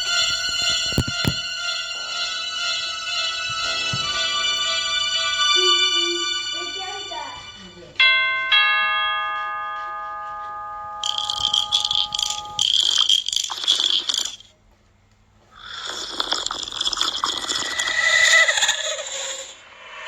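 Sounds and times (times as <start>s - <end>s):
bell-like chime: 0.0s - 12.6s
harsh high rattling hiss: 15.6s - 20.0s.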